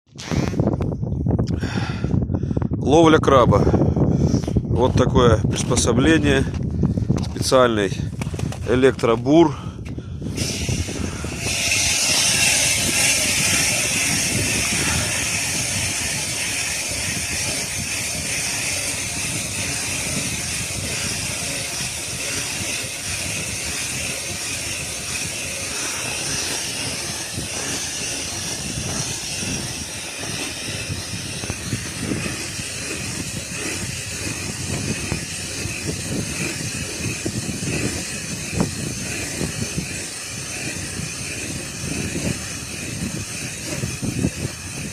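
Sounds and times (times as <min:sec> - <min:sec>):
electric ice auger drilling: 0:10.3 - 0:44.9.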